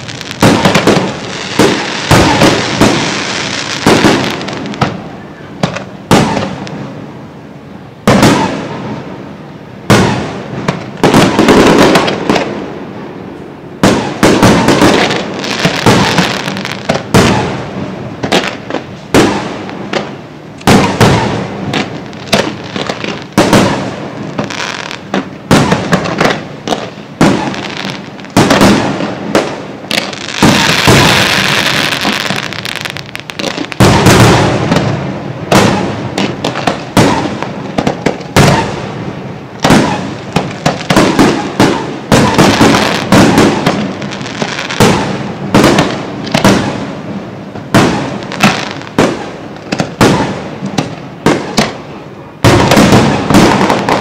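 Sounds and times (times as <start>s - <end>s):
firework crackling hiss: 0.0s - 5.0s, 13.8s - 47.1s.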